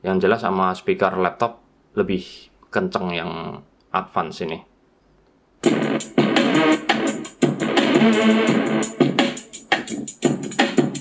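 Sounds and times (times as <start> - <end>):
distorted song through small speaker: 5.6 - 11.0.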